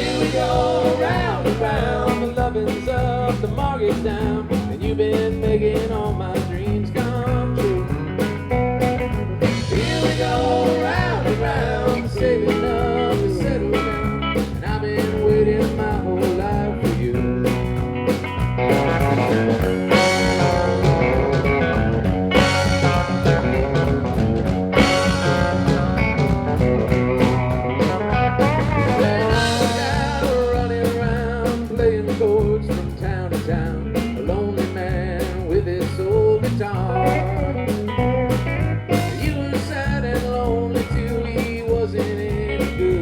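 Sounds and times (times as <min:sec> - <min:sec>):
live country band playing: 0:00.0 - 0:43.0
pitch-bending lead melody: 0:17.6 - 0:30.3.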